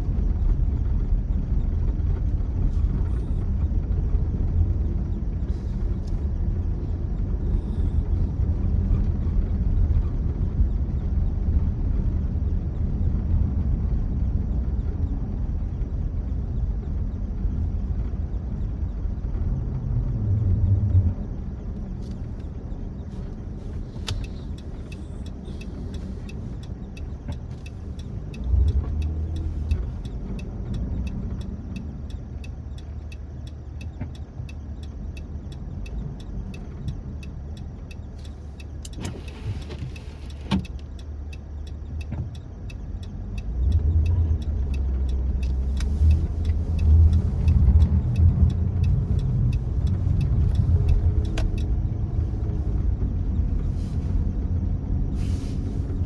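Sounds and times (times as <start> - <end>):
car road and engine rumble: 0.0 - 56.0
faint even ticking: 23.2 - 39.0, 40.6 - 52.9.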